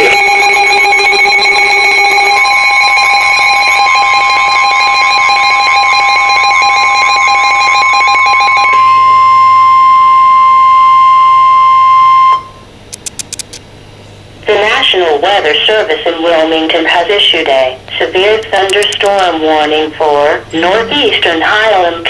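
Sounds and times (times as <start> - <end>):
two-tone alarm: 0.0 - 12.7.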